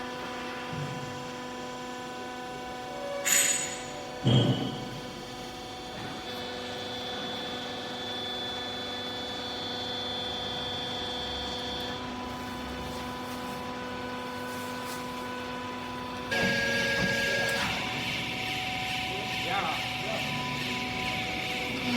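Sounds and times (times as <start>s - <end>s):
loud clunk: 3.3s - 5.0s
hydraulic pump motor humming: 3.5s - 21.9s.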